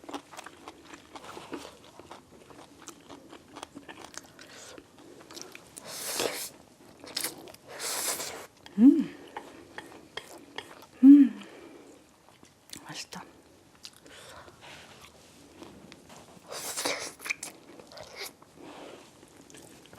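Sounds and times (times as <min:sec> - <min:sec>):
crunching and slurping: 0:00.0 - 0:08.7
wet mouth clicks and chewing: 0:00.1 - 0:11.0, 0:16.5 - 0:18.4
person humming mmm: 0:08.7 - 0:09.2, 0:11.0 - 0:11.5.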